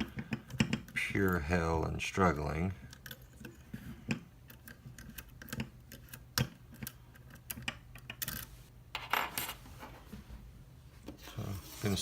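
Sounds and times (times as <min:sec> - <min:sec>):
scraping rustles: 0:11.1 - 0:12.0.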